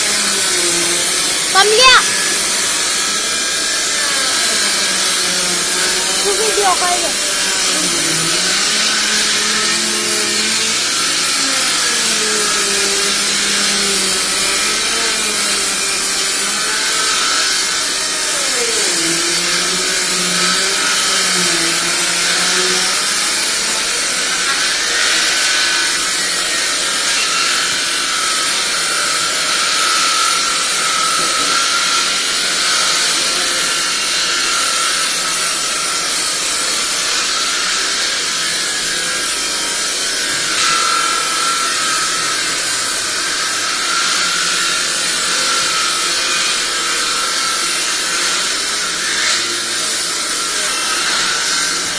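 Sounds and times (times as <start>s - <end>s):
power tool whirring on wood: 0.0s - 51.9s.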